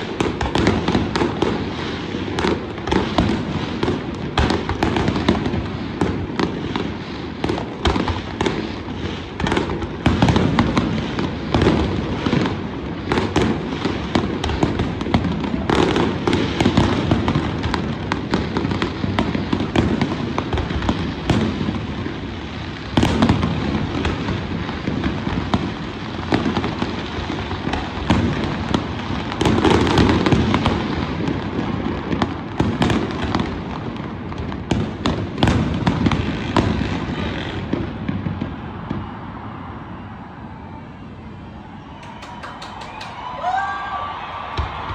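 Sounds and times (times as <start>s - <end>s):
fireworks bangs and crackling: 0.0s - 40.8s, 41.4s - 44.9s.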